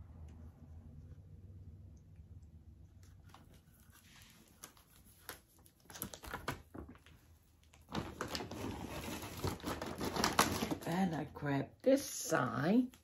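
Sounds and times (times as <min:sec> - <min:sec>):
packaging rustling: 0:03.4 - 0:11.1.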